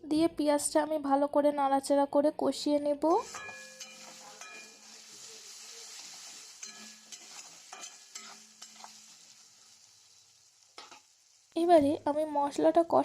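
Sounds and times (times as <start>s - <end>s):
onions sizzling in hot oil: 3.0s - 13.0s.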